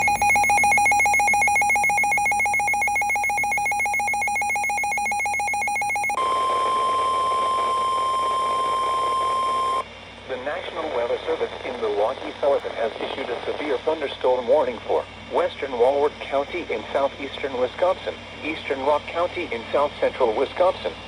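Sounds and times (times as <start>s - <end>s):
steady warning alarm tone: 0.0s - 9.8s
warbling electronic data tones: 0.0s - 9.8s.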